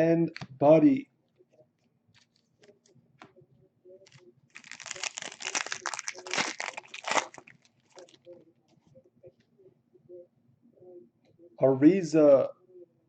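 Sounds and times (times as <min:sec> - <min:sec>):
plastic wrapper crinkling: 0:02.1 - 0:02.9, 0:04.0 - 0:08.3.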